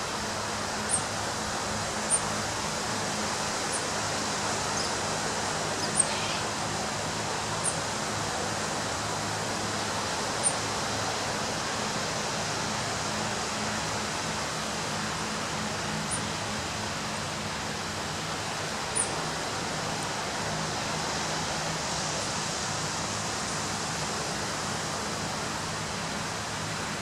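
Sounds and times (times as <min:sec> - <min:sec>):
ocean surf on a beach: 0:00.0 - 0:27.0
bird chirping: 0:04.7 - 0:05.0, 0:05.8 - 0:06.5, 0:10.4 - 0:10.6, 0:16.1 - 0:16.3.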